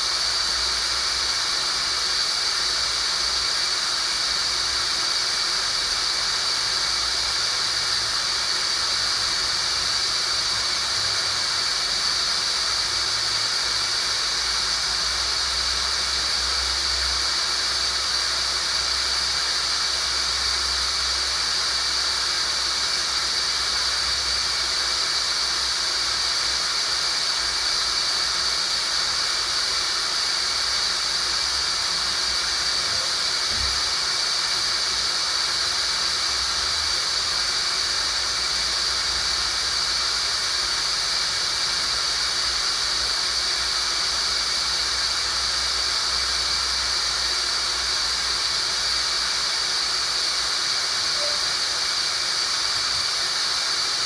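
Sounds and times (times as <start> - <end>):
even hiss: 0.0 - 54.0
steady high-pitched tone: 51.1 - 52.0.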